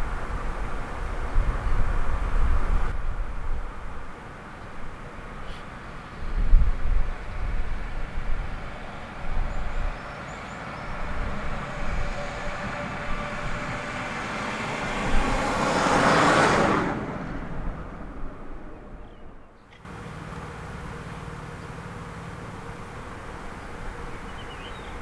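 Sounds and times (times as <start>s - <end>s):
wind on microphone: 0.0s - 4.1s, 6.2s - 19.4s
passing vehicle rumble: 0.0s - 25.0s
faint bird chirps: 19.0s - 25.0s.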